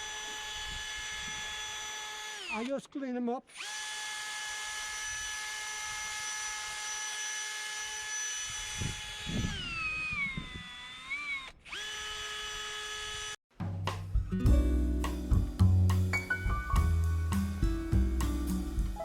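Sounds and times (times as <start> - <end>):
electric drill whining: 0.0 - 2.7, 3.5 - 13.4
drill scraping metal part: 0.0 - 13.4.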